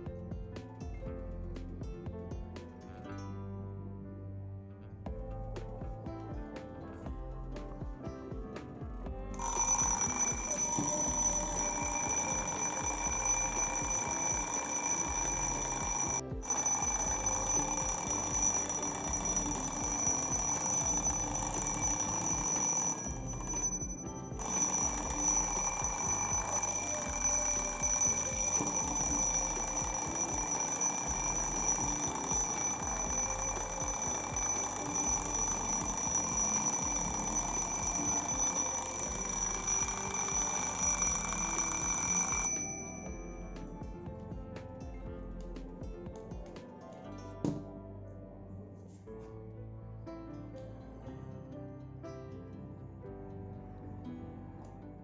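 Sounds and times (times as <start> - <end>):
twin-bell alarm clock ringing: 9.4 - 44.0.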